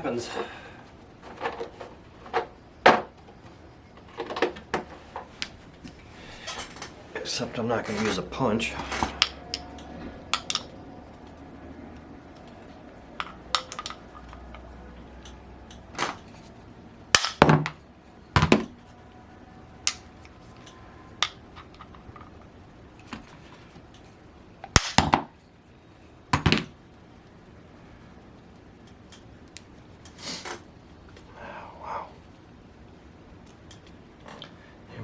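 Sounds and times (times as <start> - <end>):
metal tools knocking together: 8.9 - 10.7, 13.2 - 14.3.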